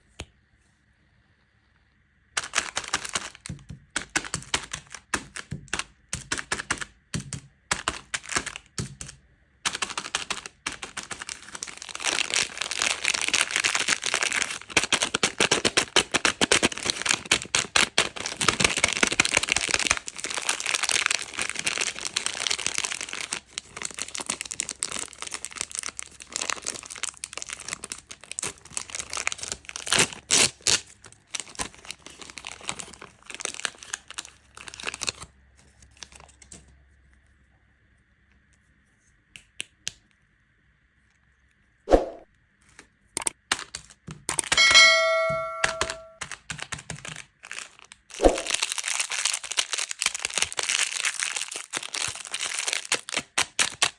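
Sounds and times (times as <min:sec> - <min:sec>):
candy wrappers crinkling: 0:02.4 - 0:36.6, 0:46.2 - 0:53.9.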